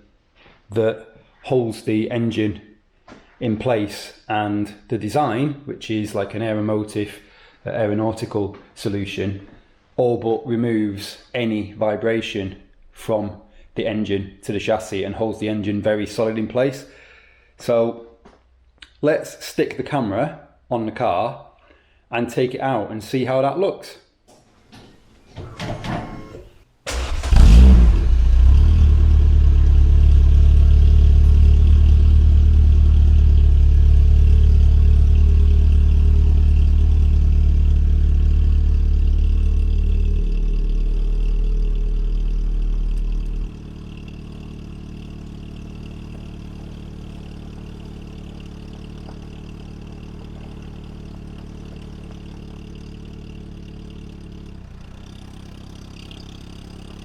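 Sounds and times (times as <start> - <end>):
car engine starting and running: 25.4 - 57.0.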